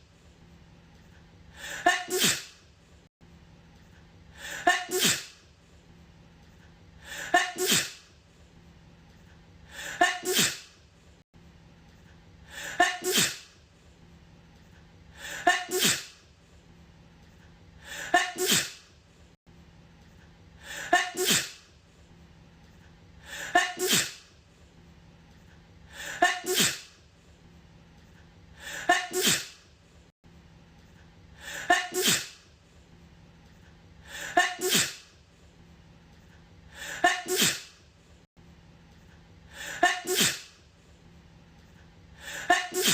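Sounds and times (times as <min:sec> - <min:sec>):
woman sneezing: 0:01.6 - 0:02.6, 0:04.4 - 0:05.4, 0:07.1 - 0:08.1, 0:09.8 - 0:10.8, 0:12.6 - 0:13.6, 0:15.2 - 0:16.2, 0:17.9 - 0:18.9, 0:20.7 - 0:21.7, 0:23.3 - 0:24.3, 0:26.0 - 0:27.0, 0:28.6 - 0:29.6, 0:31.5 - 0:32.4, 0:34.1 - 0:35.1, 0:36.8 - 0:37.8, 0:39.6 - 0:40.6, 0:42.2 - 0:42.9.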